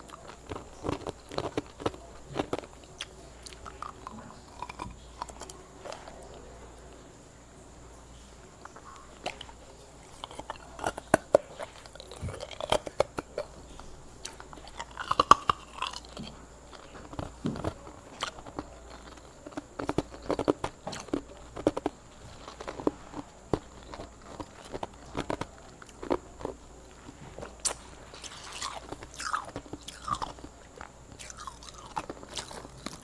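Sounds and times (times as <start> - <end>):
ice being chewed: 0.0 - 33.0.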